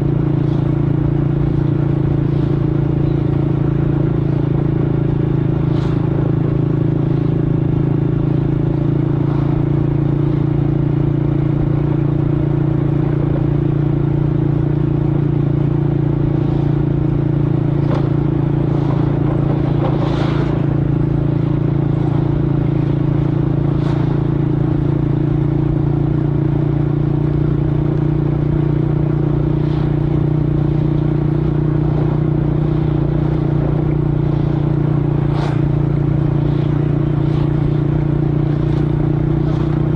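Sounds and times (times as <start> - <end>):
scooter engine idling: 0.0 - 5.6, 6.3 - 20.0, 20.6 - 39.9.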